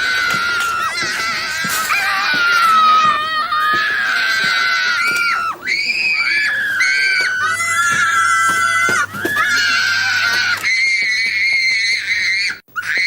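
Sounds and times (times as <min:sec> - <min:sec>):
child screaming: 0:00.0 - 0:13.0.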